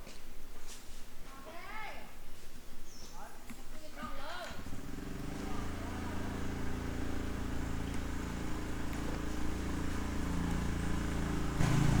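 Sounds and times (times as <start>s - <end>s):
low engine-like hum: 4.6s - 12.0s.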